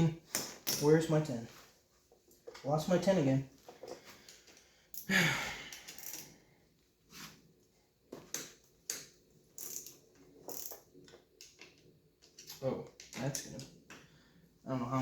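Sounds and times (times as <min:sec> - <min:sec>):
ratchet wrench clicking: 0:05.8 - 0:06.3, 0:09.6 - 0:10.8.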